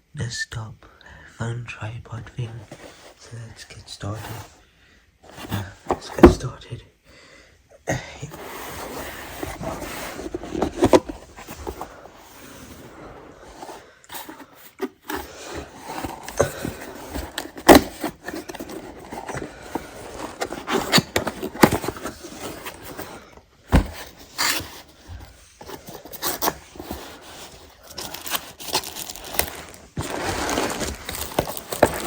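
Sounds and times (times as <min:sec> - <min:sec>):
packaging scraping and rustling: 0:08.3 - 0:32.0.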